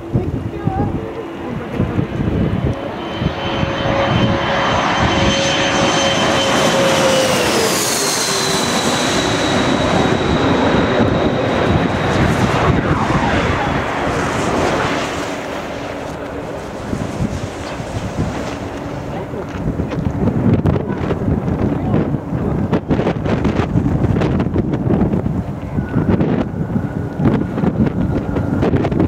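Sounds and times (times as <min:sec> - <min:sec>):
jet engines passing overhead: 0:00.0 - 0:29.0
whistling rush of air: 0:02.3 - 0:19.0.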